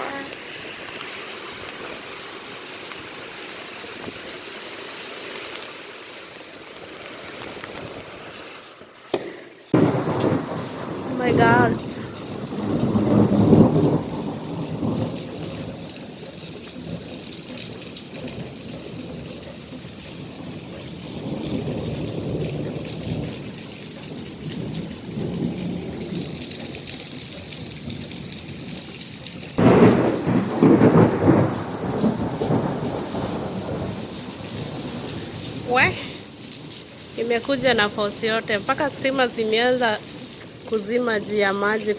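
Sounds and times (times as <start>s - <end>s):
heavy rain: 0.0s - 41.9s
loud thunderclap: 9.8s - 16.1s, 20.9s - 26.4s, 29.6s - 36.7s
rolling thunder: 9.8s - 19.4s, 20.3s - 26.8s, 29.6s - 36.8s.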